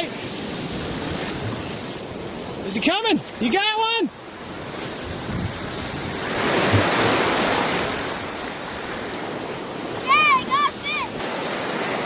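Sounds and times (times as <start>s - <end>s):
wave breaking on beach: 0.0s - 12.0s
wind buffeting microphone: 4.3s - 12.0s.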